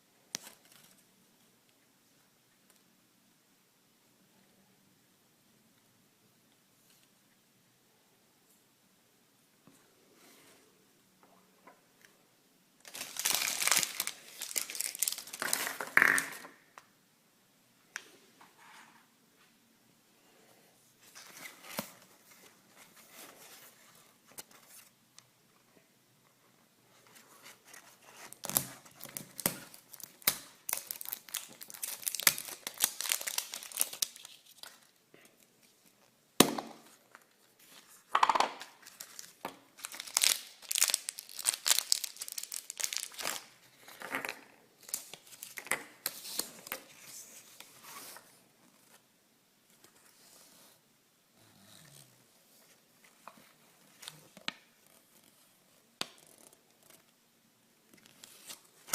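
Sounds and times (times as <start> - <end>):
packaging tearing and crinkling: 12.9 - 16.4, 28.3 - 34.8, 38.8 - 43.5.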